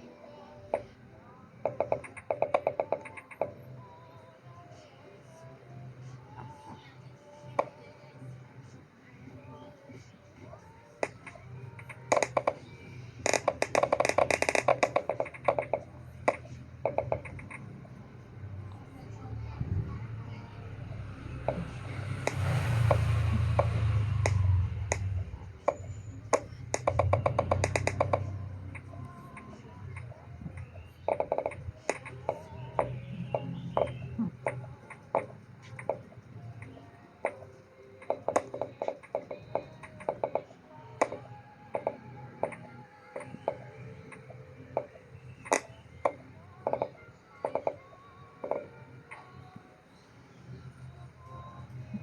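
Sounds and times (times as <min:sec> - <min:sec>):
sharp clicks and taps: 0:11.0 - 0:17.8, 0:21.4 - 0:49.4.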